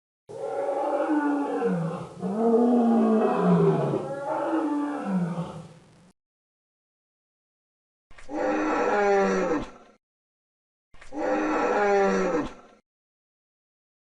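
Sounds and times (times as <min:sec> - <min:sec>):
dinosaur roars: 0:00.3 - 0:05.8, 0:08.3 - 0:10.0, 0:11.2 - 0:12.8.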